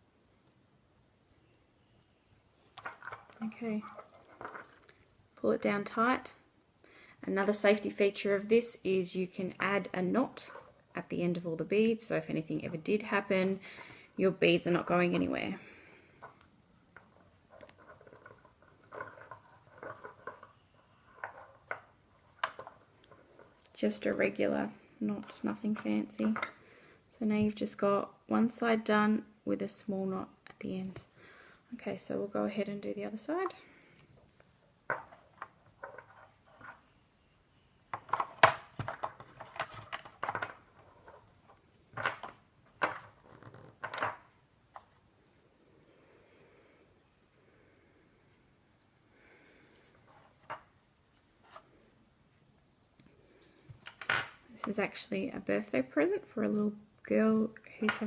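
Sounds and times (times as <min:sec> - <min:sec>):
cord rustling: 0:02.5 - 0:05.2, 0:14.6 - 0:26.6, 0:33.1 - 0:37.1, 0:37.9 - 0:44.0.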